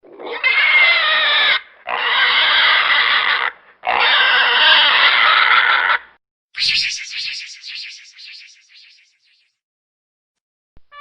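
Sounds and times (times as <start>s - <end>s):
pig squealing: 0.0s - 6.1s.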